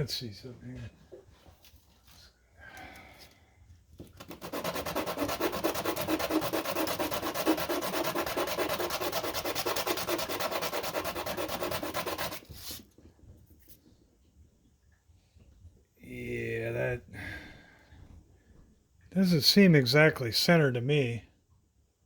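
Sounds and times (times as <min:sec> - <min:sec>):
hand tool rubbing strokes: 0:04.2 - 0:12.8.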